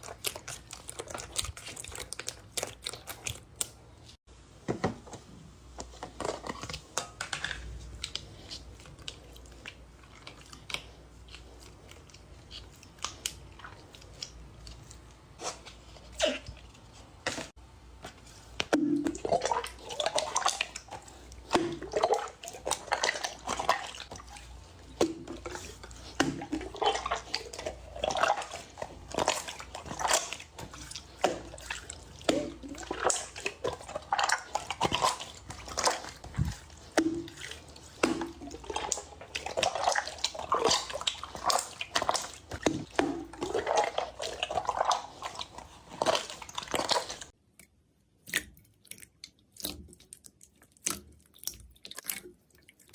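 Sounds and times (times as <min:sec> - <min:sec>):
slime squishing wet pops: 0:17.3 - 0:47.3.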